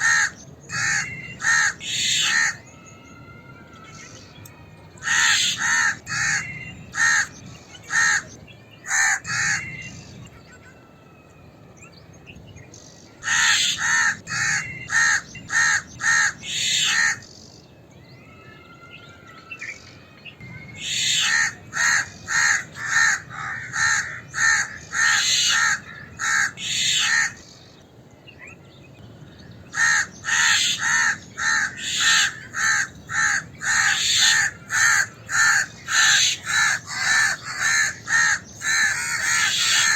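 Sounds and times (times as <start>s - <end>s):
crow and myna alarm calls: 0.0s - 2.7s, 5.0s - 10.0s, 13.2s - 17.4s, 20.8s - 27.7s, 29.5s - 39.9s.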